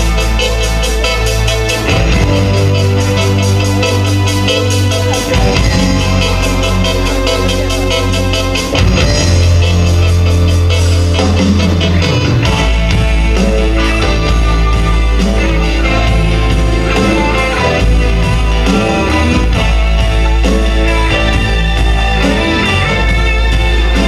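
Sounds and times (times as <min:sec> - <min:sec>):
sustained bass notes: 0:00.0 - 0:24.0.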